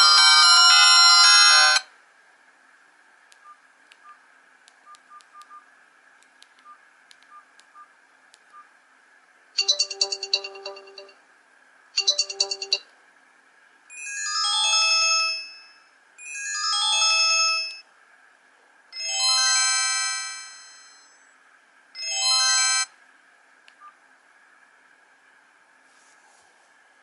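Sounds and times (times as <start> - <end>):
mobile phone chime ringtone: 9.6 - 11.2, 12.0 - 12.8.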